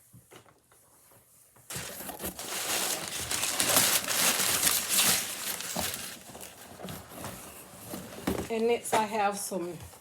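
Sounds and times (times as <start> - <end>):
packing material crinkling: 1.7 - 7.2.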